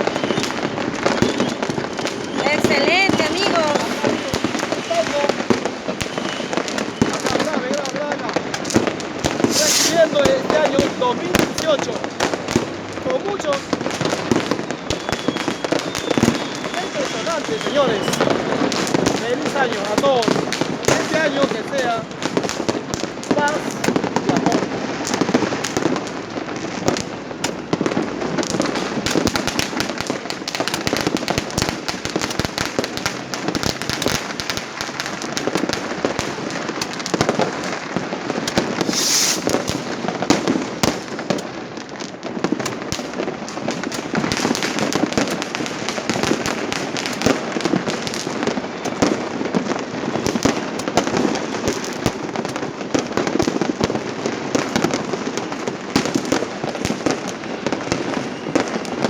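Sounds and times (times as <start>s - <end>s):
fireworks crackling and popping: 0.0s - 59.0s
brief high hiss: 9.5s - 10.0s, 38.8s - 39.5s.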